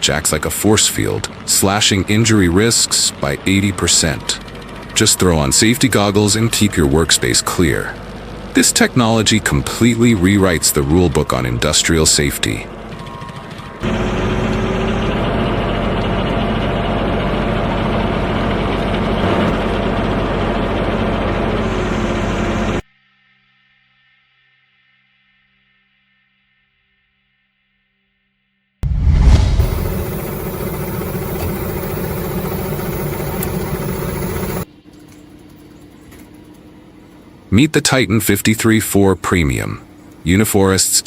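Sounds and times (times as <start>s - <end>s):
heavy machine engine running: 1.0s - 10.8s, 12.4s - 22.8s, 28.9s - 34.7s
mechanical noise: 28.8s - 34.7s.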